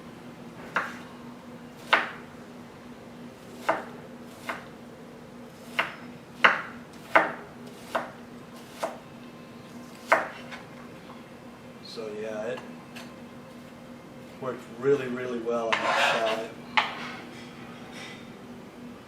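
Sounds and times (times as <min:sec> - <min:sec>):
knife slicing a shallot: 0:05.6 - 0:09.0.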